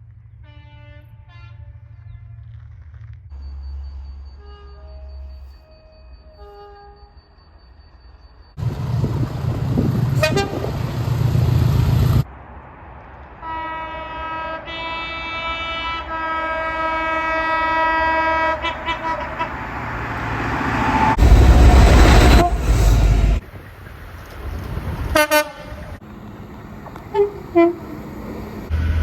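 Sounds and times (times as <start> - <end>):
train rumble: 0.0 - 29.0
train air horn chord: 10.2 - 10.7, 13.4 - 19.6, 21.2 - 23.4.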